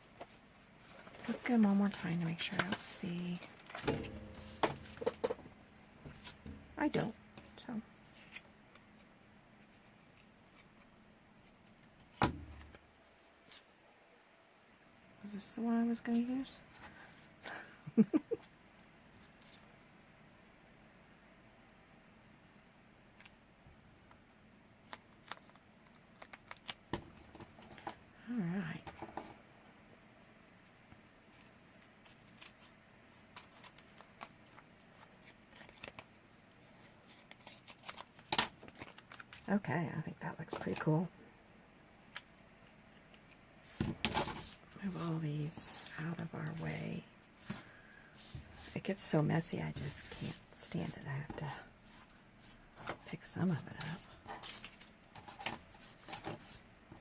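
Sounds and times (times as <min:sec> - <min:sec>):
paper rustling and tapping: 0:03.4 - 0:07.5
soft brushing sound: 0:43.6 - 0:54.4.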